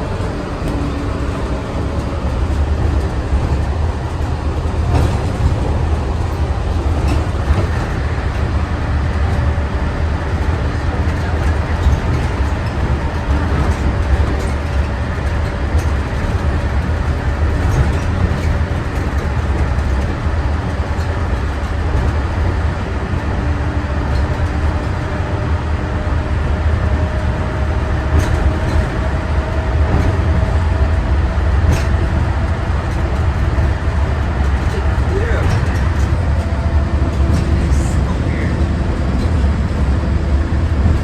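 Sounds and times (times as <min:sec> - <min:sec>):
monorail train rumble: 0:00.0 - 0:41.0.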